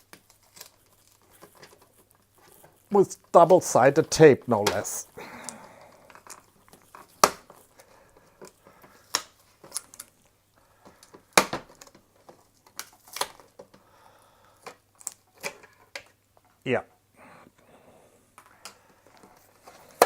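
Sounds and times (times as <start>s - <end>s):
plastic crinkling rustle: 0.0s - 13.8s, 14.6s - 16.6s, 18.4s - 20.0s.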